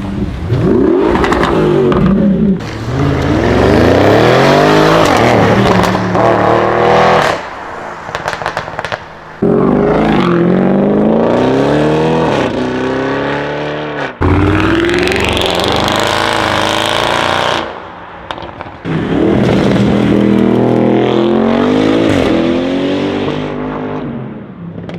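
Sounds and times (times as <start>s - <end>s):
car engine accelerating hard: 0.5s - 7.4s
exhaust crackles and pops: 8.1s - 9.2s.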